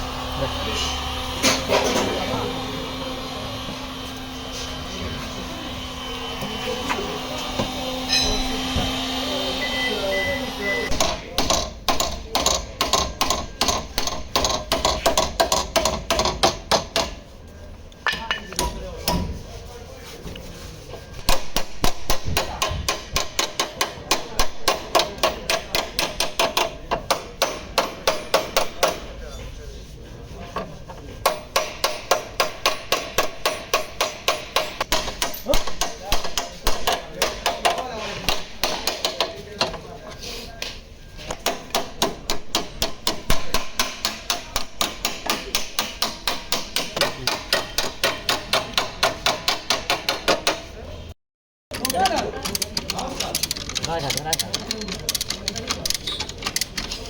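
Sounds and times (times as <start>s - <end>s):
hammer beating sheet metal: 21.2s - 29.2s, 31.2s - 39.4s, 41.3s - 50.7s.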